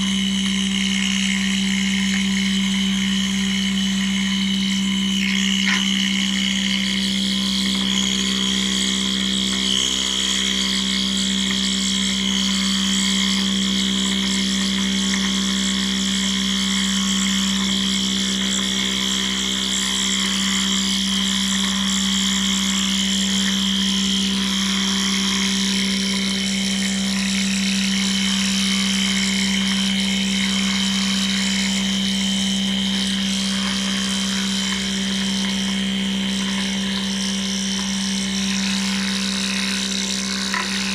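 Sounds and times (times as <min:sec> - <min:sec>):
milling machine humming and whining: 0:00.0 - 0:40.9.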